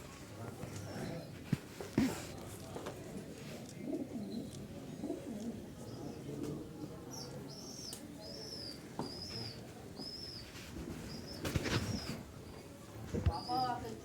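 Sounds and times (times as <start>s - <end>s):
bird chirping: 7.1s - 10.5s.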